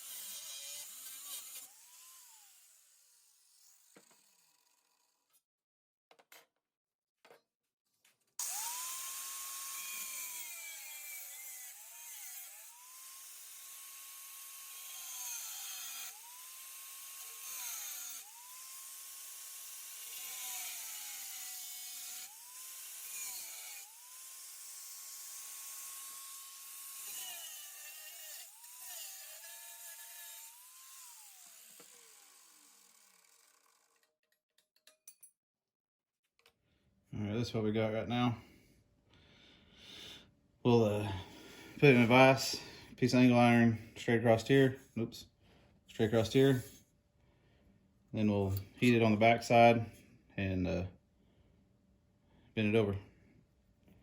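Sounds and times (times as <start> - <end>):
power cutting tool cutting metal: 0.0 - 4.9, 8.4 - 34.0.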